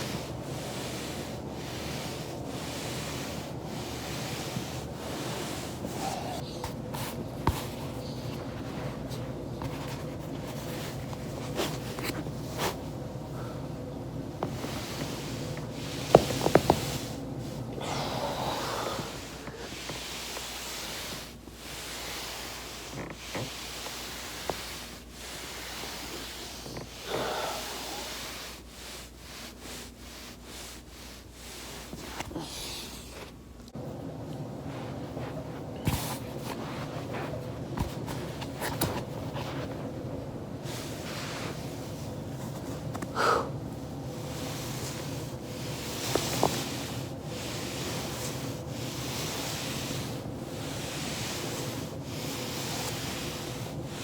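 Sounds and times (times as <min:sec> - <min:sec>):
rustling on foam roller: 0:00.0 - 0:54.0.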